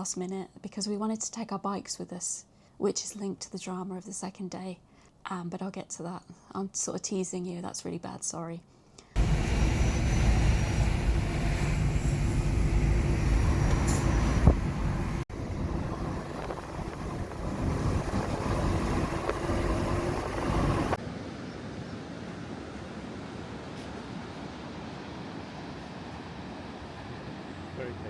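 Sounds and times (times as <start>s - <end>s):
road vehicle rumble: 9.2s - 28.0s.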